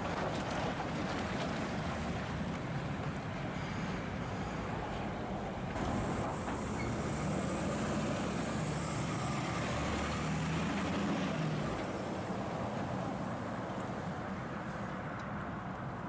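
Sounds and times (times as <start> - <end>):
traffic and road noise: 0.0 - 16.0
truck diesel engine passing: 0.5 - 14.0.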